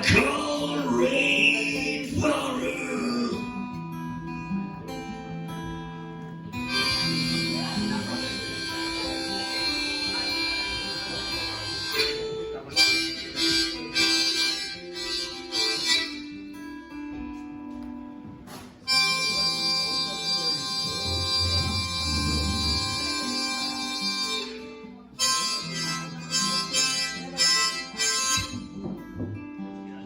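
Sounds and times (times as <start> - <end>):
rock band guitar: 0.0 - 30.0
harmonica lead: 6.5 - 17.1, 18.8 - 29.1.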